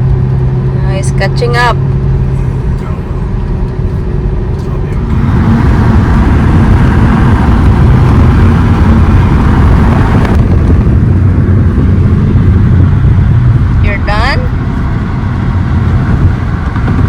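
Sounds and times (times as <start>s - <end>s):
tyre and road noise: 0.0s - 17.0s
vehicle engine running nearby: 0.0s - 17.0s.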